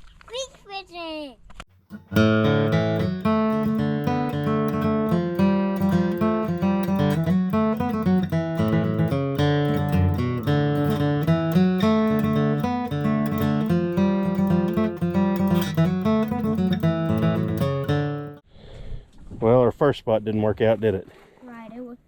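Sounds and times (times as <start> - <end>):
acoustic guitar music: 1.7 - 18.4.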